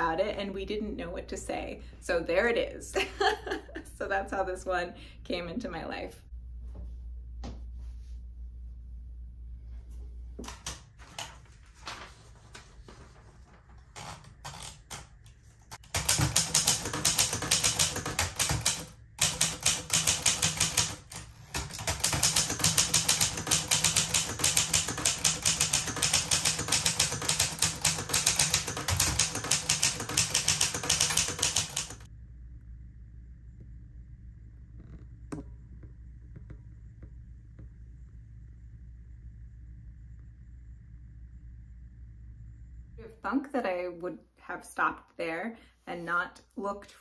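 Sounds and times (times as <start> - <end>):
manual typewriter typing: 13.8 - 32.1.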